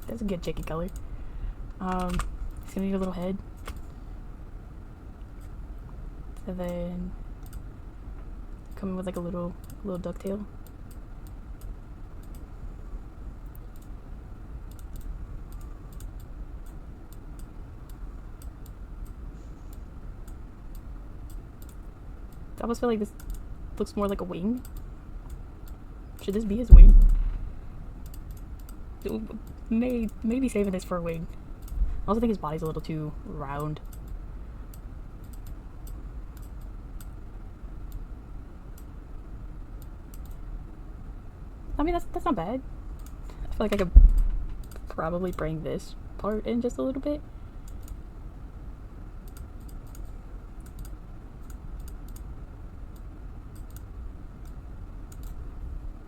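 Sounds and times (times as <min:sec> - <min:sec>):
computer mouse clicks: 0:00.0 - 0:01.0, 0:01.7 - 0:03.9, 0:07.4 - 0:07.6, 0:08.6 - 0:09.8, 0:10.6 - 0:12.5, 0:13.4 - 0:14.0, 0:14.7 - 0:23.5, 0:24.1 - 0:27.4, 0:28.0 - 0:30.2, 0:33.6 - 0:37.2, 0:38.7 - 0:39.0, 0:39.8 - 0:40.4, 0:43.0 - 0:45.5, 0:47.6 - 0:48.0, 0:49.2 - 0:52.3, 0:52.9 - 0:55.4
low background hum: 0:00.0 - 0:56.0.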